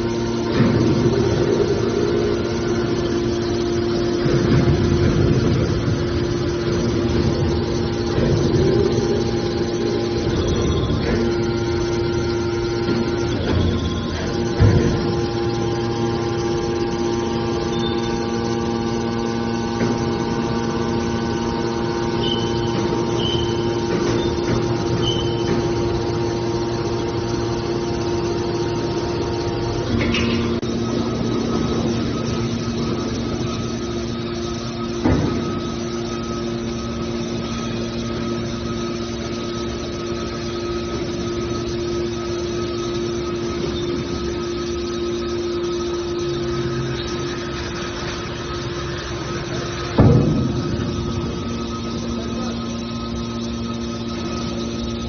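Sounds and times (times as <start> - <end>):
hydraulic power unit humming: 0.0 - 55.0.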